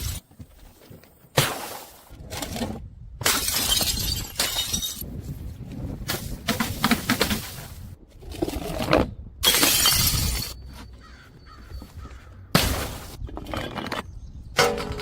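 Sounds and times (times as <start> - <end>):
glass bottles smashing: 3.2 - 5.1, 9.4 - 10.8.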